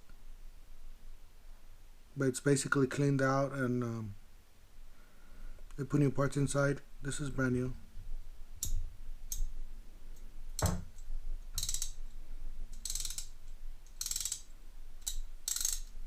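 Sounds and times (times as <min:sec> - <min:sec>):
hand ratchet clicking: 0:11.6 - 0:12.0, 0:12.7 - 0:16.0.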